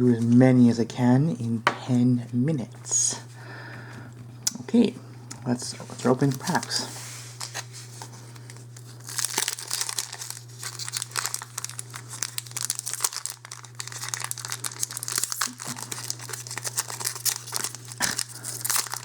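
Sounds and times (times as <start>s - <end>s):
steady low hum: 0.0s - 19.0s
foil wrapper crinkling and tearing: 5.8s - 19.0s.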